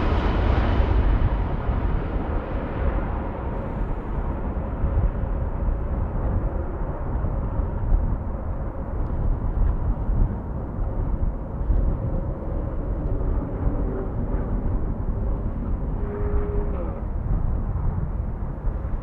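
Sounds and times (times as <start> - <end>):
jet engine rumble: 0.0 - 19.0.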